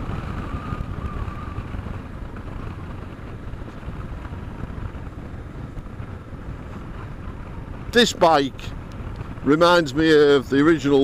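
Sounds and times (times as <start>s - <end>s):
motorcycle engine running: 0.0s - 11.0s
wind on microphone: 0.0s - 11.0s.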